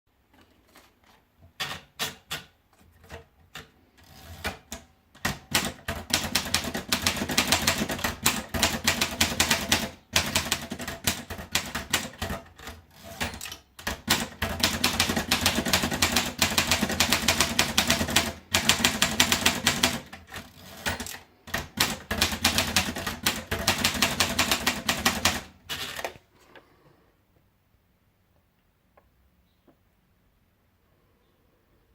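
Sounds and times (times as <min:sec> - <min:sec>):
manual typewriter typing: 0:01.6 - 0:26.2.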